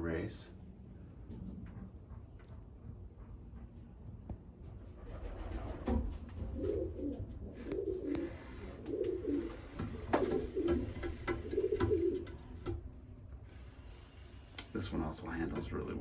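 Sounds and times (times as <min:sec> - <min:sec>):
pigeons cooing: 0:05.0 - 0:12.9.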